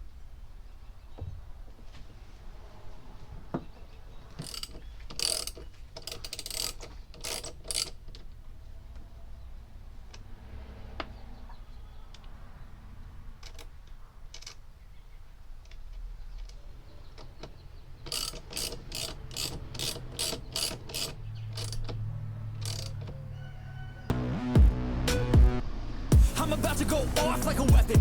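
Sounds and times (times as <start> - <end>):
tool handling noises: 3.5 - 8.4, 17.2 - 23.2
ratchet clicking: 4.3 - 8.3, 14.3 - 14.6, 18.0 - 22.0, 22.6 - 23.2.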